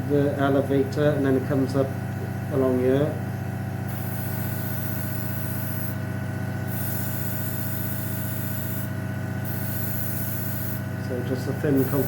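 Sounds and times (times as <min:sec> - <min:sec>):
compressor humming: 0:00.0 - 0:12.0
airbrush air hiss: 0:03.9 - 0:12.0.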